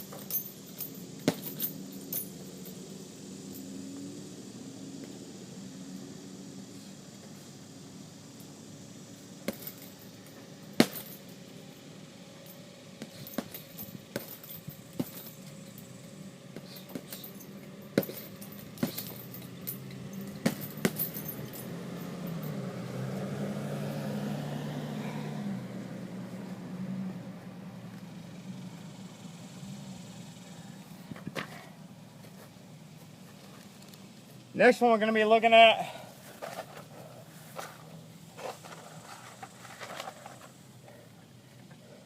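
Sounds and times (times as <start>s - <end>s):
low steady hum: 0.0s - 23.6s
gloves thudding on heavy bag: 10.7s - 11.2s, 18.0s - 19.2s, 20.4s - 21.2s.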